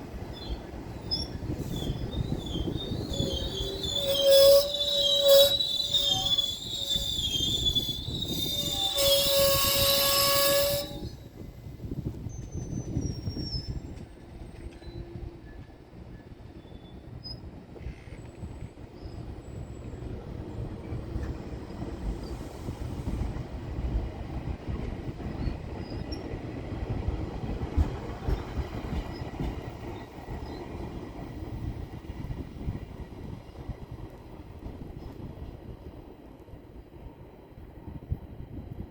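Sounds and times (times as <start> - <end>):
train wheels squealing: 0.3 - 20.2, 20.8 - 23.2, 25.3 - 26.4, 28.2 - 32.4.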